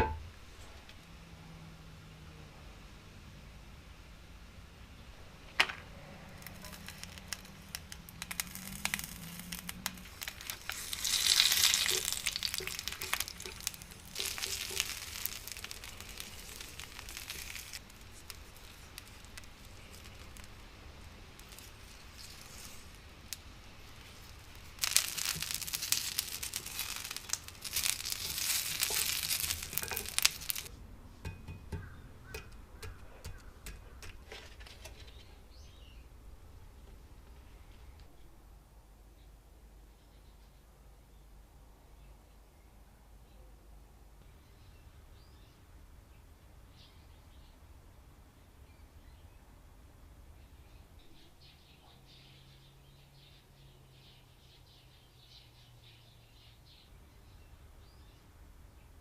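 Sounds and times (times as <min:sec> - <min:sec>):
food sizzling on hot plate: 0:06.4 - 0:30.7.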